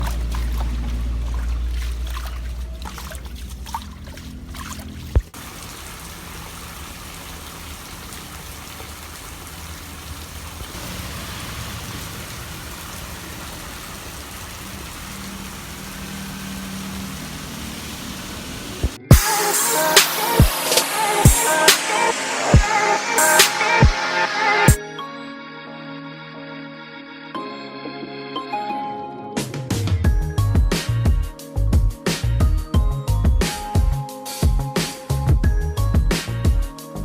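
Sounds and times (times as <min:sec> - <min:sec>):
rain and rushing floodwater: 0:00.0 - 0:24.8.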